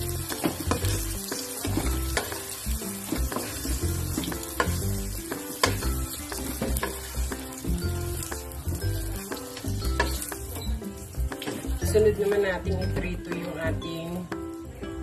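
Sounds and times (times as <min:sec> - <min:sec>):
tofu sizzling in oil: 0:00.0 - 0:15.0.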